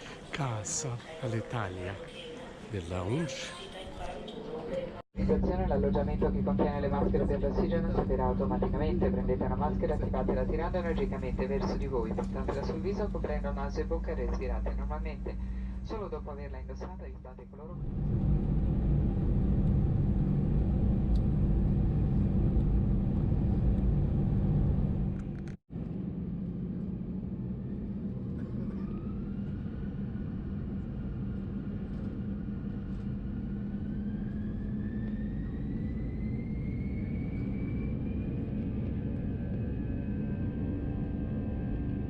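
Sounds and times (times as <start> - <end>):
low engine and air rumble: 5.1 - 42.0
jet engine whine rising in pitch: 25.9 - 42.0.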